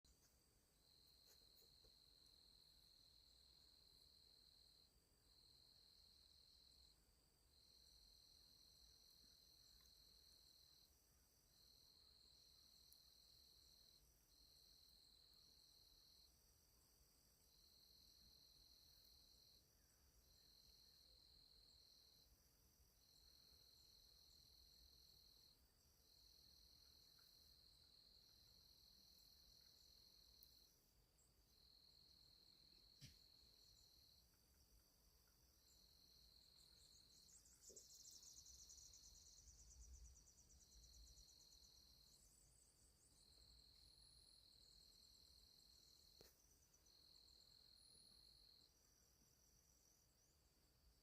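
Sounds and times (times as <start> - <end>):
insects trilling: 31.5 - 50.3.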